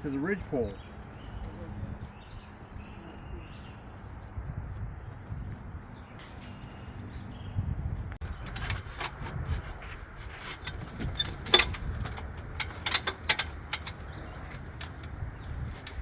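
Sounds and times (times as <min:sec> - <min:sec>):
steady low rumble: 0:00.0 - 0:16.0
equipment clicking and knocking: 0:10.5 - 0:16.0.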